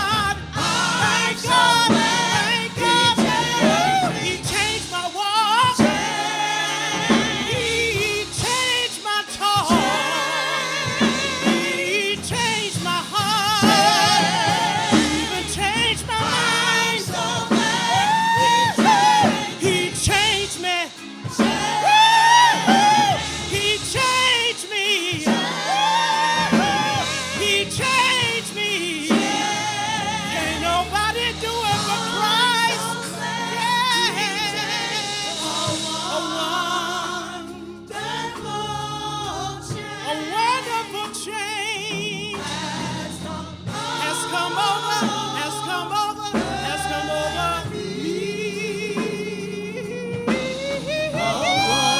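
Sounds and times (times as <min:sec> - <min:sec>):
gospel singing with vibrato: 0:00.0 - 0:51.9
held instrumental chords: 0:00.0 - 0:51.9.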